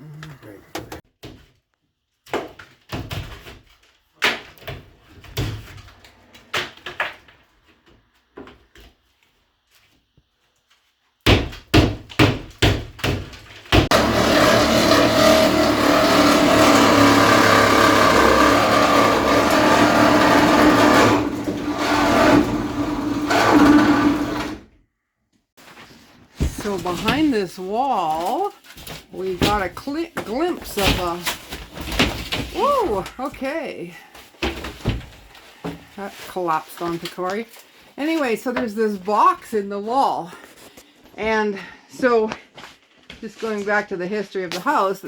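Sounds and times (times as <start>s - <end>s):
demolition knocks and clatter: 11.3s - 24.6s, 26.3s - 33.6s
electric motor running: 13.9s - 24.6s.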